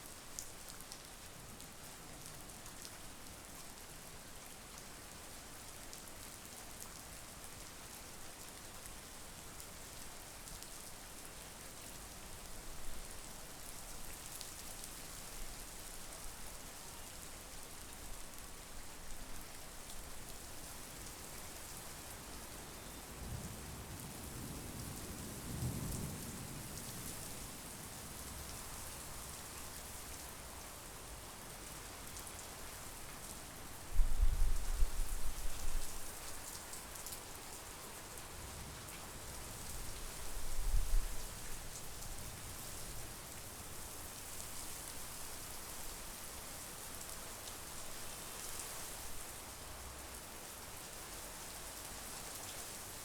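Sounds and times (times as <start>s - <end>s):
steady rain: 0.0s - 53.0s
low rumble of thunder: 22.9s - 28.5s.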